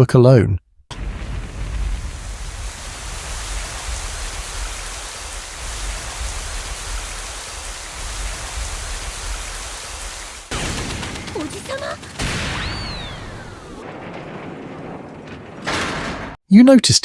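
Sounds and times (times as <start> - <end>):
steady rain falling: 0.9 - 13.8.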